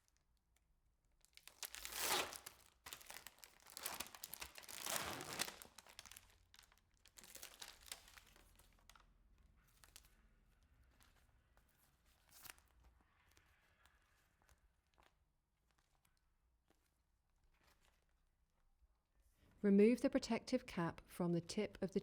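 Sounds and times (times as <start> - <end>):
plastic packaging tearing and crinkling: 1.3 - 9.0.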